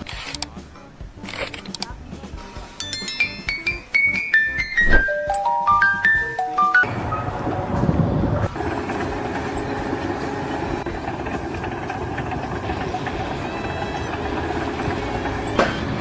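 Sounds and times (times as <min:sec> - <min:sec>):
machine rumble and hum: 0:06.8 - 0:16.0.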